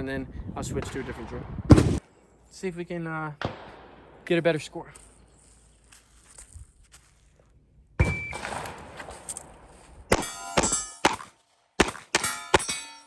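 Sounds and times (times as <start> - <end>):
shot timer beep: 8.0 - 8.4
handgun shots: 10.1 - 12.8
metallic ringing: 10.2 - 11.2, 12.2 - 13.0.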